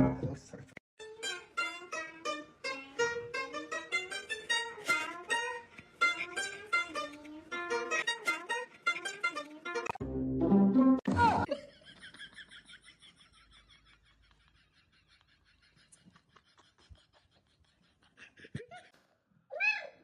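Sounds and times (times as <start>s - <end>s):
plucked-string bouncy melody: 0.0s - 0.4s, 1.0s - 11.5s.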